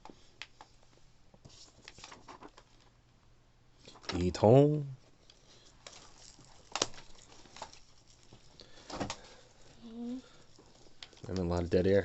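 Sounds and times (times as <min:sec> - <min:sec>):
person humming: 0:09.8 - 0:10.4.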